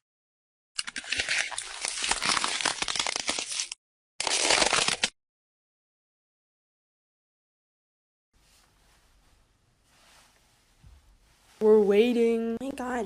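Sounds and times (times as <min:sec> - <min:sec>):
crackly crinkling: 0:00.8 - 0:05.1.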